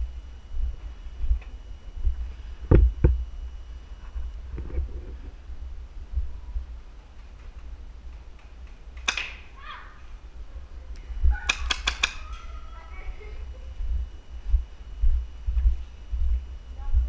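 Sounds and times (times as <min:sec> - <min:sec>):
airsoft gun shots: 0:09.0 - 0:09.5.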